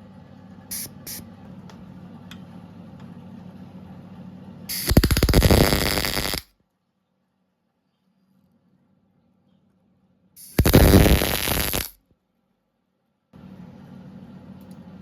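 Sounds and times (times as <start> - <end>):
welding arc crackling: 0.7 - 1.2, 4.7 - 6.4, 10.4 - 12.0.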